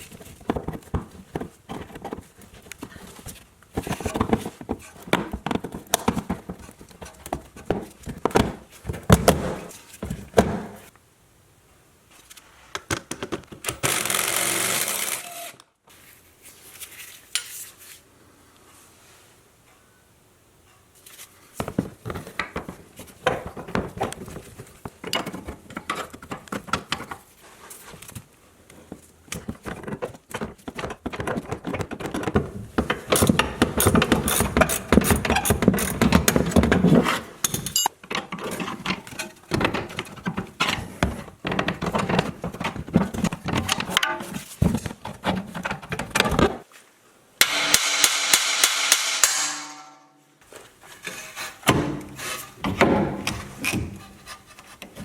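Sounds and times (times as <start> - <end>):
motorised tool running: 13.8 - 15.5
metal clicks and clatter of wrenches: 37.4 - 39.4.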